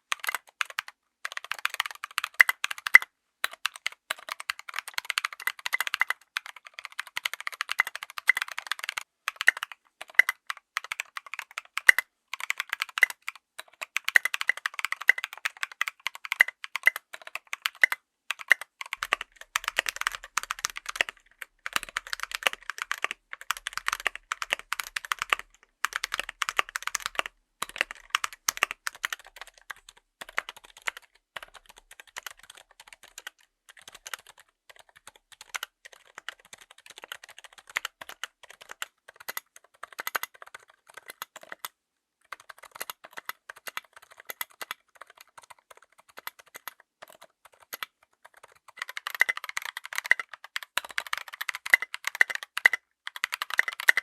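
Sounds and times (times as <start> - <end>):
mechanical keyboard typing: 0.0 - 54.0.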